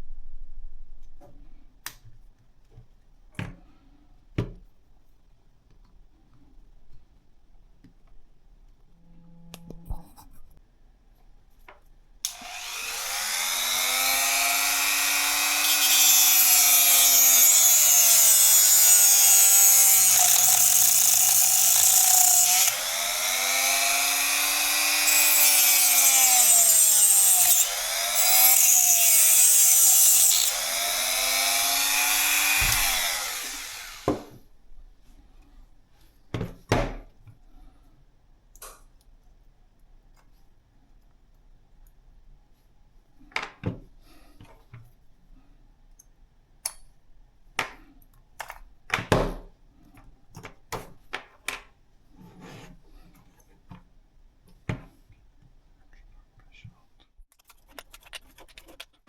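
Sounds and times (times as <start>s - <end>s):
small electric motor running: 12.3s - 34.2s.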